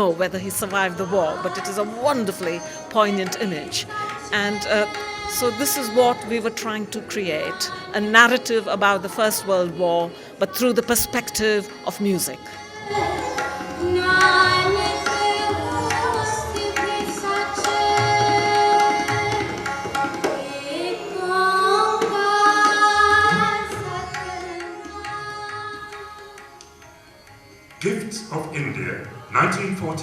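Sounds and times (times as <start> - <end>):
tabla strokes: 11.9 - 28.1.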